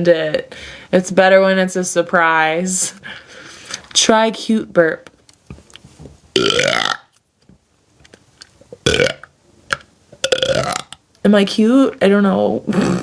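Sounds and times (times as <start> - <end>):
woman burping: 6.4 - 7.1.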